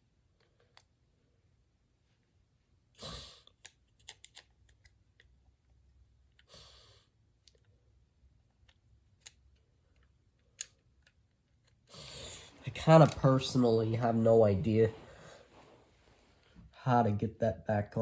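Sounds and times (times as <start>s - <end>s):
plastic toy parts clicking: 3.5s - 5.4s, 8.6s - 11.9s.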